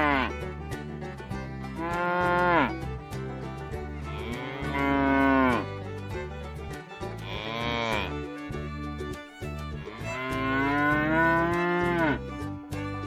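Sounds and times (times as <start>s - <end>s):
cow mooing: 0.0s - 0.3s, 1.8s - 2.7s, 4.2s - 5.6s, 7.2s - 8.1s, 10.2s - 12.2s
background music with steady beat: 0.0s - 13.0s.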